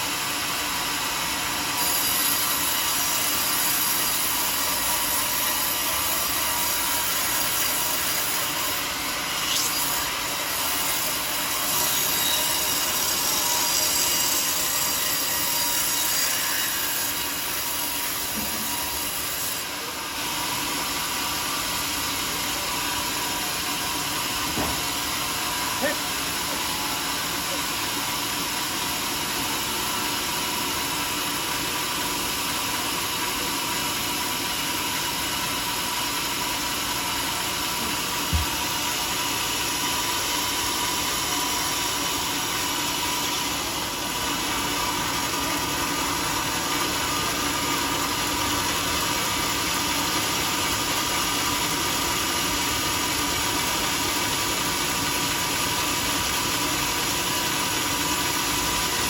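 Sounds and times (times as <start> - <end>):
sawmill machinery running: 0.0 - 59.0
short knock: 24.5 - 24.9.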